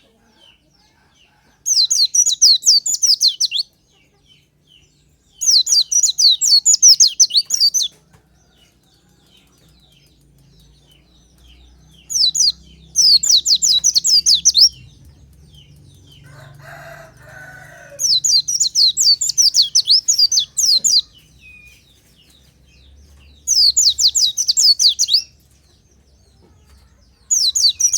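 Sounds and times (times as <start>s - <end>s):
bird high sweeping chirps: 5.4s - 8.0s, 12.0s - 22.1s, 23.4s - 25.4s, 27.2s - 27.9s.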